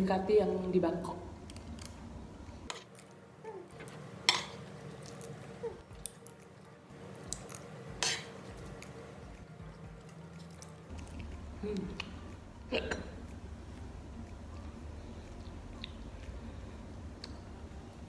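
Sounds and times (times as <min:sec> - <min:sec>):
cutlery clinking on a plate: 0:03.8 - 0:04.6, 0:08.0 - 0:08.4.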